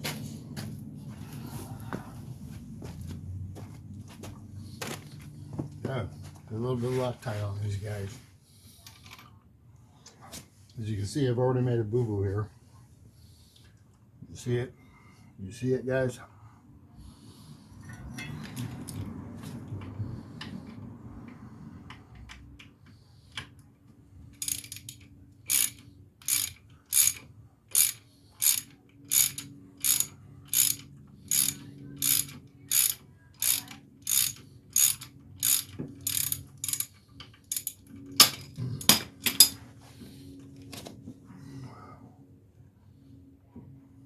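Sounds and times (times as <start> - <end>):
ratchet wrench clicking: 24.4 - 38.4.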